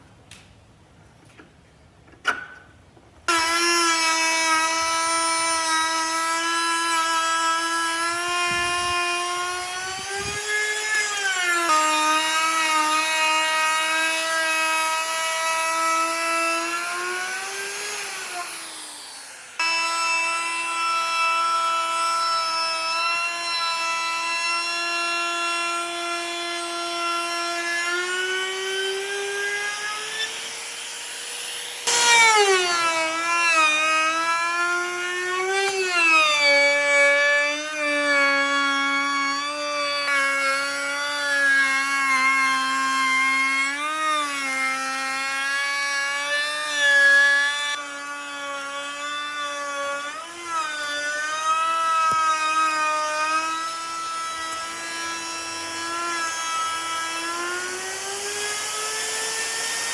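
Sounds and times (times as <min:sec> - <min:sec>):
electric power tool motor whining: 0:03.2 - 0:59.9.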